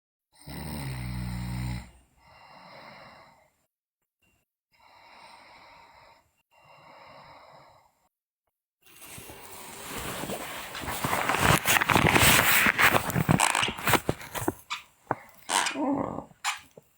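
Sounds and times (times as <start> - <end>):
girl snoring: 0.4 - 3.4, 15.1 - 16.5
soft breathy breaths: 4.8 - 8.1.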